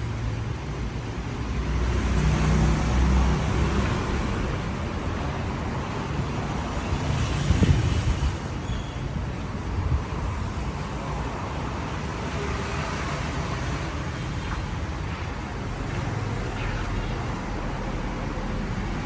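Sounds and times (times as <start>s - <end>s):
road traffic rumble: 0.0s - 19.0s.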